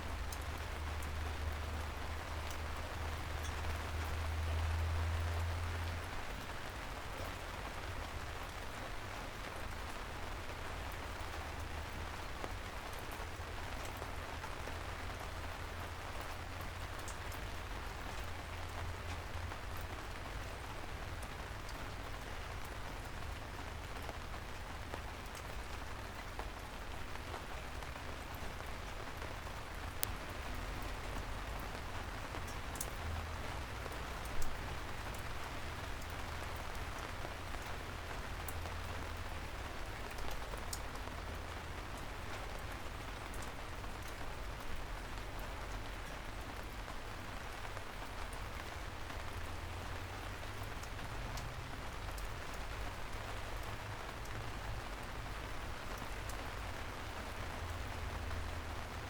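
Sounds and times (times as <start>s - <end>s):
rain falling on streets: 0.0s - 59.0s
water drips: 29.7s - 45.5s.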